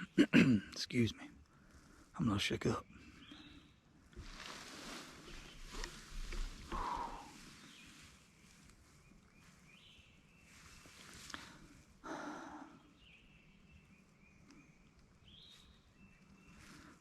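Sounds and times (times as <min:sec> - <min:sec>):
faint songbirds chirping: 0:00.0 - 0:17.0
breathy rustle: 0:04.2 - 0:08.8, 0:10.4 - 0:12.8, 0:16.3 - 0:17.0.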